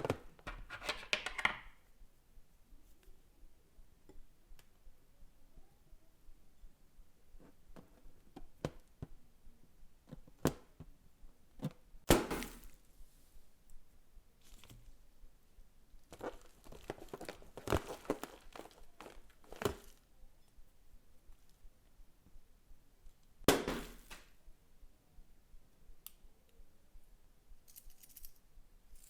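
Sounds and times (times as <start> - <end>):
sharp knock: 23.5 - 24.2.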